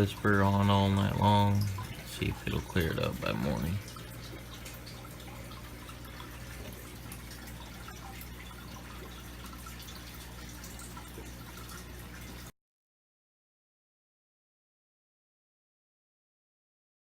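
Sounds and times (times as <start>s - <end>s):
low electric hum: 0.0s - 12.5s
water trickling and dripping: 0.0s - 12.5s.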